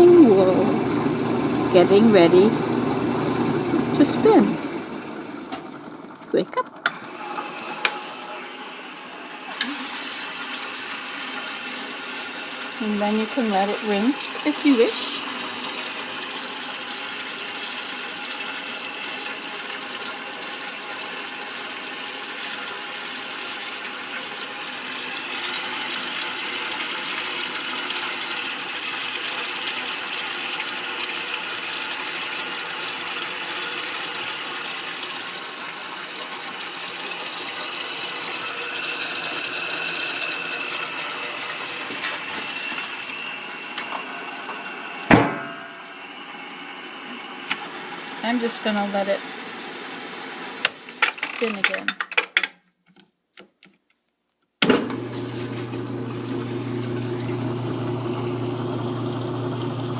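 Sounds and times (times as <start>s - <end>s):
running water rushing: 33.8s - 43.1s.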